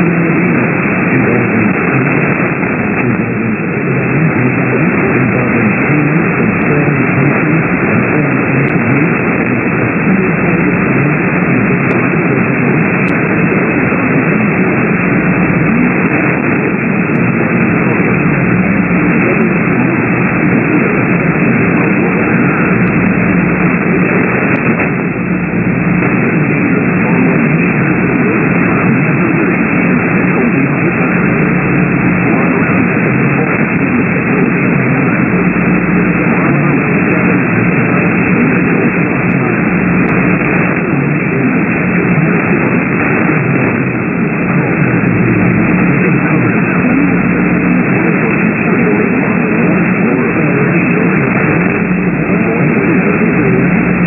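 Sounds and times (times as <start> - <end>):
radio static hiss: 0.0 - 54.0.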